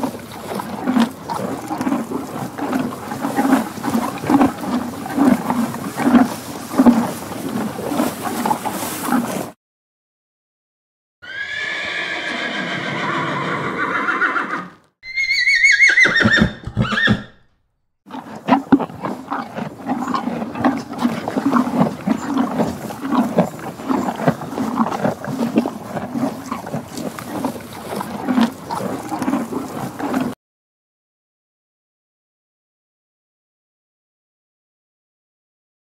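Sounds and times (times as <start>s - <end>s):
horses whinnying: 0.0s - 9.4s, 11.2s - 17.4s, 18.1s - 30.4s.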